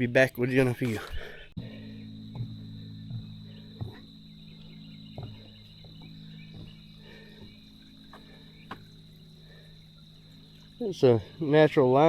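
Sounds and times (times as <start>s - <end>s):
high insect buzz: 0.5s - 12.0s
soft knocks: 5.1s - 8.9s.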